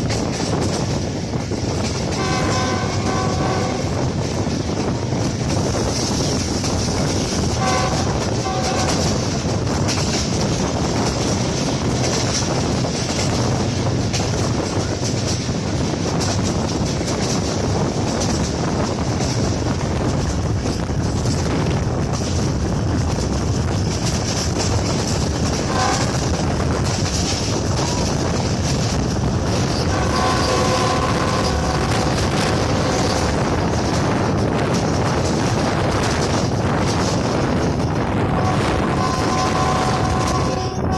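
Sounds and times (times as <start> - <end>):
train rumbling with wheel clatter: 0.0 - 40.9
train horn: 2.1 - 4.1, 7.4 - 9.3, 25.6 - 26.3, 29.7 - 33.4, 38.2 - 40.9.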